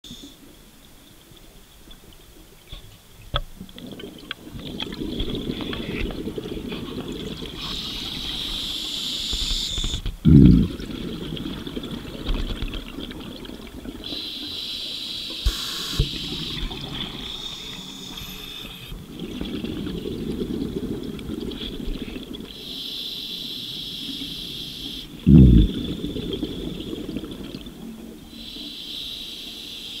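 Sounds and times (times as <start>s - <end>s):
bubbling of exhaled air: 3.7s - 8.6s, 10.1s - 14.3s, 15.5s - 22.6s, 25.1s - 28.5s
regulator inhalation hiss: 7.6s - 9.9s, 14.1s - 16.6s, 17.2s - 18.9s, 22.6s - 25.1s, 28.3s - 30.0s
loud bubble bursts: 10.2s - 13.6s, 25.2s - 27.7s.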